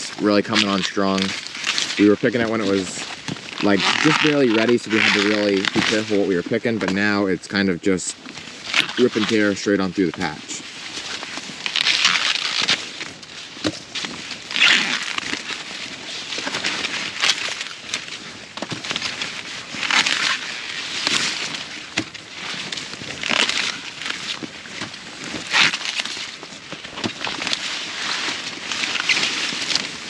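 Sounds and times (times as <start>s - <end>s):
dry leaves and husks rustling: 0.0s - 30.0s
corn ears snapping off stalks: 0.2s - 7.2s, 8.7s - 10.4s.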